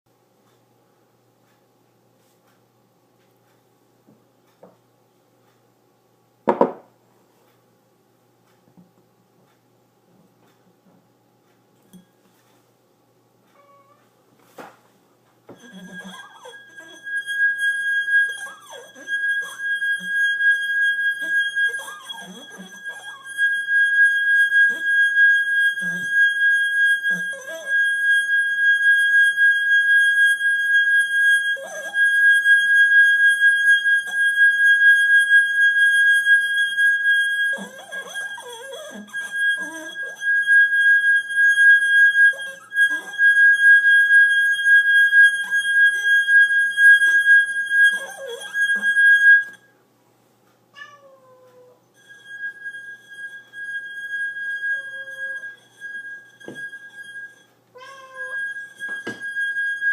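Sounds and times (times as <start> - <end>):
steady high-pitched tone: 15.5 - 49.7, 51.9 - 59.9.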